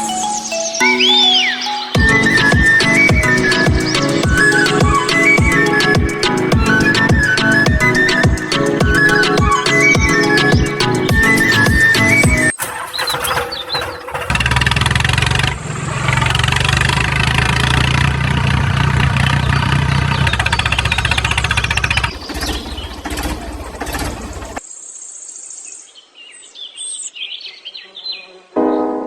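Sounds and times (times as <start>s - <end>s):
birds chirping: 0.0s - 14.5s, 19.1s - 29.0s
loud engine running: 14.1s - 24.6s.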